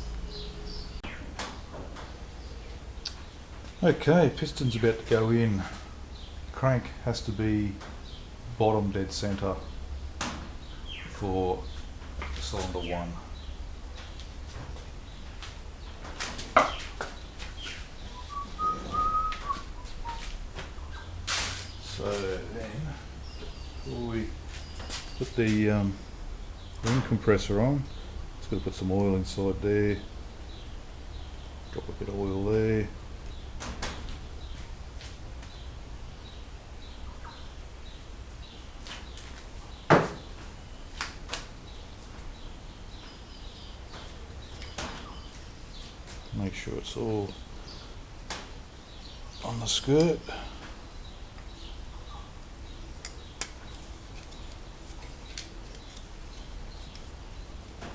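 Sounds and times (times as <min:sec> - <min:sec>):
low steady hum: 0:00.0 - 0:57.9
faint bird chirps: 0:17.6 - 0:26.8
short whistled notes: 0:18.1 - 0:20.3.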